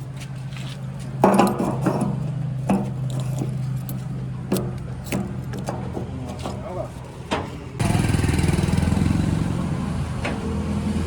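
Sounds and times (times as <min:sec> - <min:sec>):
metallic knocks and clinks: 0:01.2 - 0:06.2.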